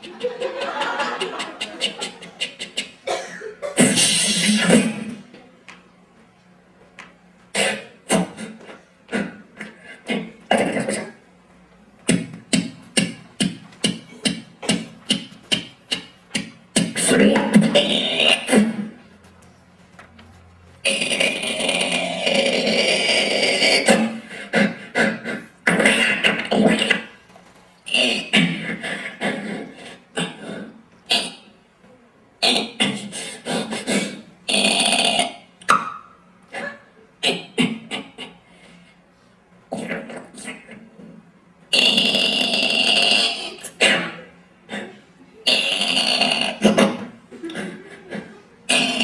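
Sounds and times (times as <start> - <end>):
man making mouth sound effects: 1.1 - 5.4, 7.5 - 11.4, 12.0 - 19.1, 20.8 - 31.7, 32.4 - 38.9, 39.6 - 49.0
vocal percussion into a microphone: 1.2 - 5.3, 7.5 - 11.2, 12.0 - 19.0, 20.8 - 31.6, 39.7 - 49.0.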